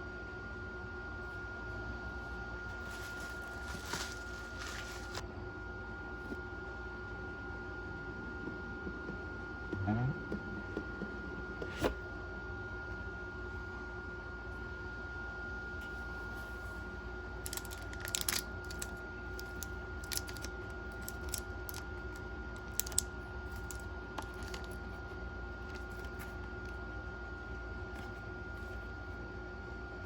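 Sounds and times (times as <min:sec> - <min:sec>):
packaging rustling and clicking: 0:02.8 - 0:05.2, 0:17.4 - 0:24.9, 0:25.6 - 0:26.8.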